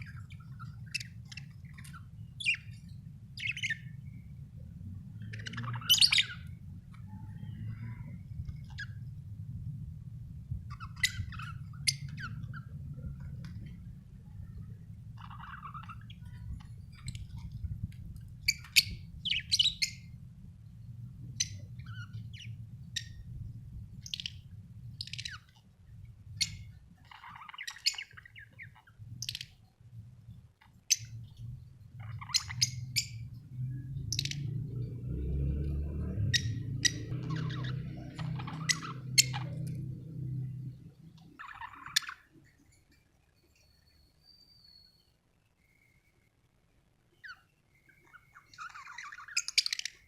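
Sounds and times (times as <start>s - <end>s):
budgerigars chirping: 0.0s - 4.0s, 5.2s - 6.5s, 10.7s - 12.7s, 15.2s - 17.5s, 18.4s - 20.1s, 21.3s - 23.2s, 24.0s - 25.6s, 26.3s - 29.6s, 32.0s - 33.4s, 34.0s - 34.5s, 36.0s - 42.3s, 47.2s - 50.0s
steady low hum: 0.0s - 43.2s.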